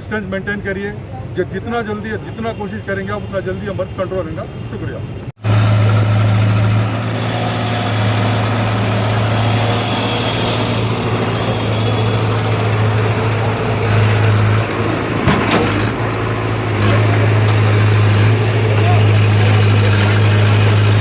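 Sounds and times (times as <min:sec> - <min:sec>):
engine humming: 0:05.1 - 0:21.0.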